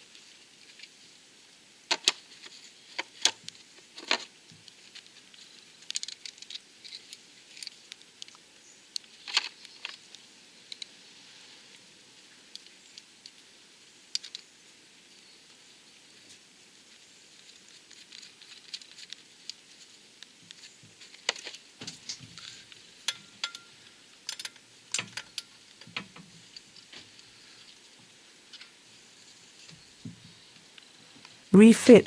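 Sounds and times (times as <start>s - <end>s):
metal parts clicking and tapping: 23.1s - 26.2s.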